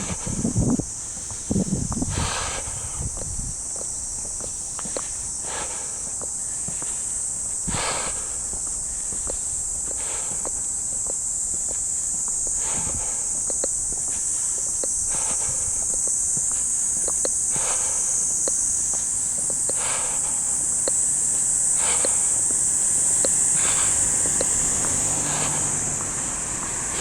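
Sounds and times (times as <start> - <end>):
footsteps walking: 0.0 - 2.1, 8.5 - 27.0
cicadas chorus: 0.0 - 27.0.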